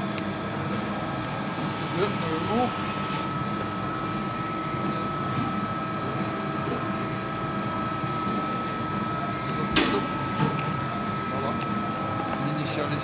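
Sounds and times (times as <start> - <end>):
high steady tone: 0.8 - 13.0.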